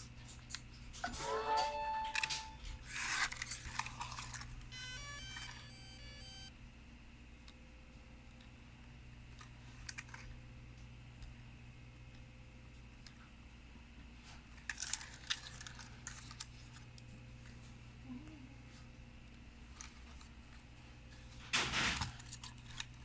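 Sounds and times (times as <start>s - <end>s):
stepped electronic tones: 4.5s - 6.5s.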